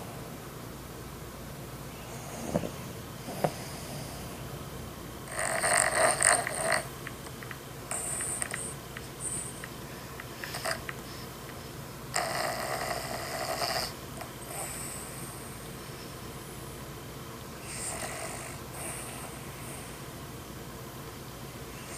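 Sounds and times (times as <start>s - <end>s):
loud snoring: 5.3s - 6.9s, 12.1s - 15.0s, 17.6s - 19.1s.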